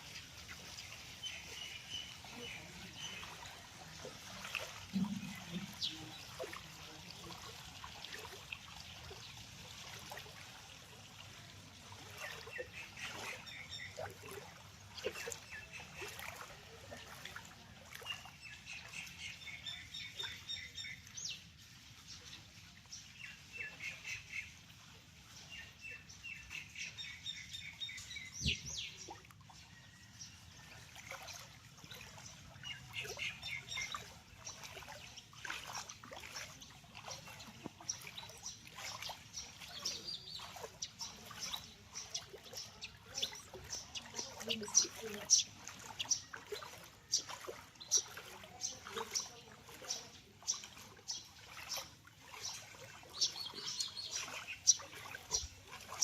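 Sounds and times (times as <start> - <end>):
faint running water: 0.0 - 56.0
birds chirping: 31.2 - 56.0.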